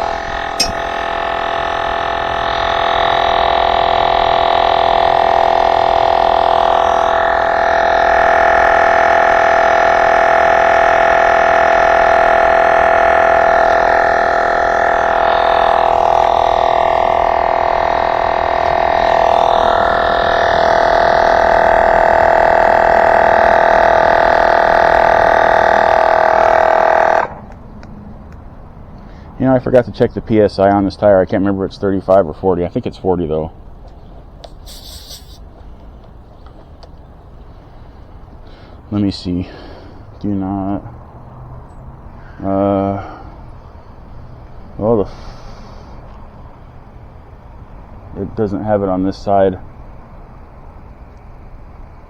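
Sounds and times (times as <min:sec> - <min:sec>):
electric tire inflator running: 0:00.0 - 0:27.5.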